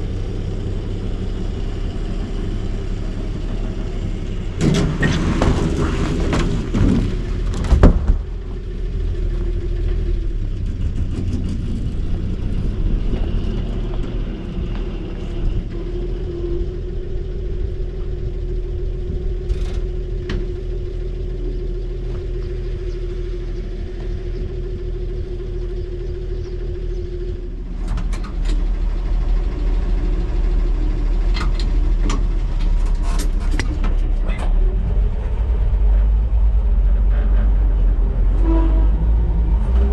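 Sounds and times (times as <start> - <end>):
truck engine running: 0.0 - 39.9
sharp clunks and knocks: 4.6 - 8.5, 31.4 - 34.1.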